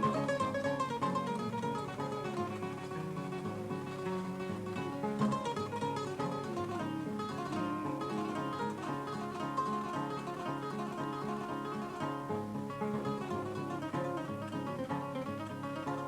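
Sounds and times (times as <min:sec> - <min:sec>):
plucked harp-lute: 0:00.0 - 0:16.0.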